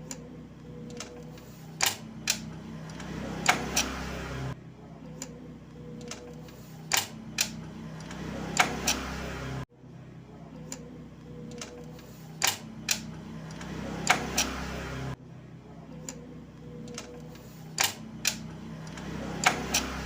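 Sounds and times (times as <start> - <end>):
motorcycle engine running: 2.0 - 4.6, 18.0 - 20.0.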